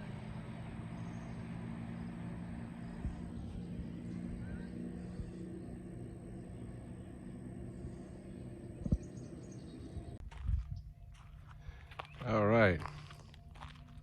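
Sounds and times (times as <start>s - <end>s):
outboard motor droning: 0.0s - 10.2s.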